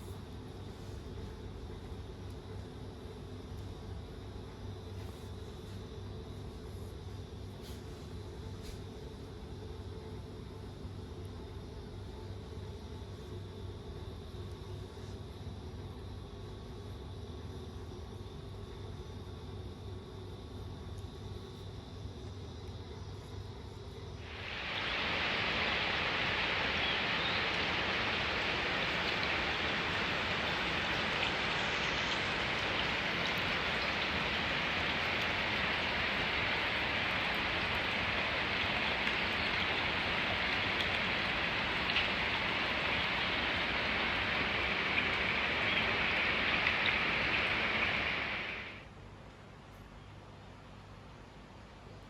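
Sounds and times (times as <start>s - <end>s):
falling splashing water: 24.2s - 48.8s.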